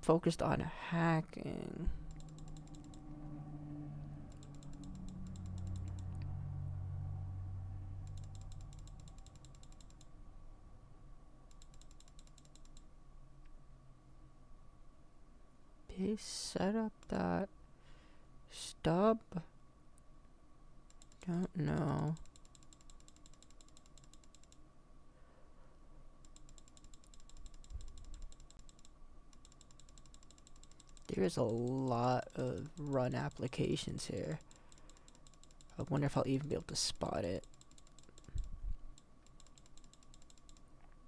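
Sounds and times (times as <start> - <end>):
faint electronic whine: 0.0 - 14.9
mouse scroll wheel clicking: 1.9 - 3.2, 4.2 - 6.3, 8.0 - 10.1, 11.5 - 12.9, 20.9 - 24.6, 26.3 - 40.7.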